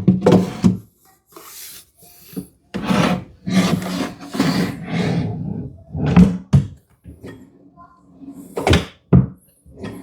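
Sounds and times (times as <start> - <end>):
wooden drawer scraping: 0.0 - 0.8, 2.7 - 6.3.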